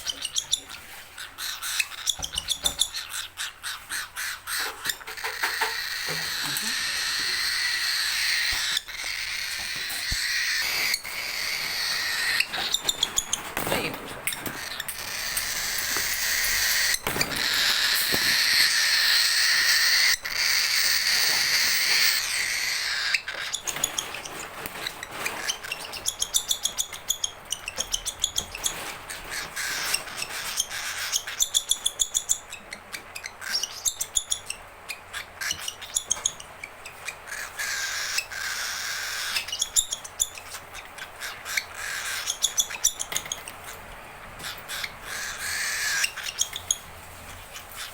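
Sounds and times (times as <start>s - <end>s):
baby bird begging calls: 1.4s - 23.6s, 37.3s - 43.4s, 44.4s - 46.7s.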